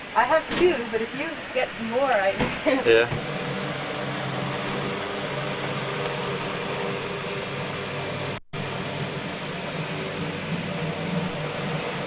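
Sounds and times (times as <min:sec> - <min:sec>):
low hum: 0:02.6 - 0:12.0.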